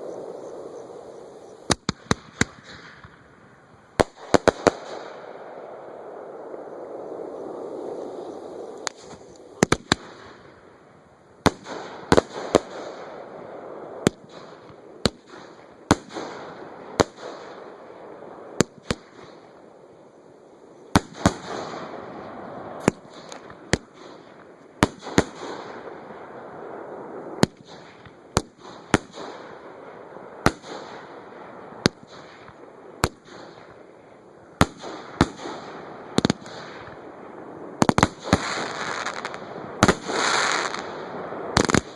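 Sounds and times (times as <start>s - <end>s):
fireworks hissing and crackling: 0.0s - 41.9s
firework bangs: 1.7s - 10.6s, 11.4s - 19.6s, 20.9s - 41.9s.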